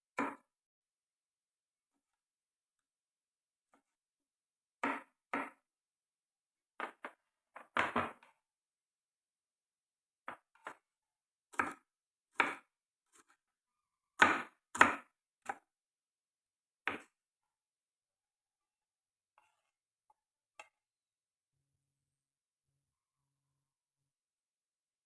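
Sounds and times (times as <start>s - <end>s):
knife chopping on cutting board: 4.8s - 5.6s, 11.5s - 13.3s, 14.2s - 15.7s, 16.8s - 17.2s.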